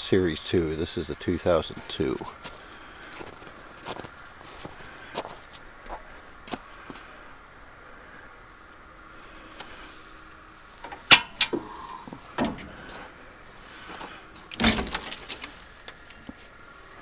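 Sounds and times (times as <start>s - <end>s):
metallic knocks and clanks: 10.8s - 11.7s.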